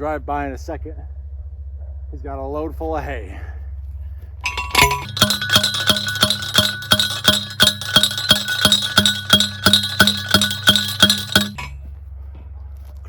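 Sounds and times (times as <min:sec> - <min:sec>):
post driver clanging on metal: 0:04.5 - 0:11.8.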